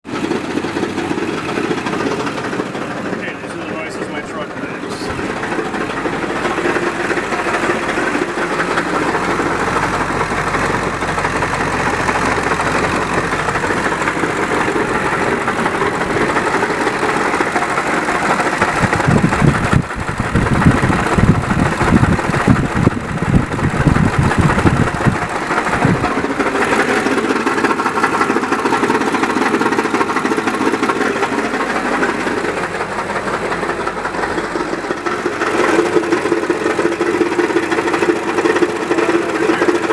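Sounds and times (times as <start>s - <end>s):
diesel engine idling with knocking: 0.0s - 39.9s.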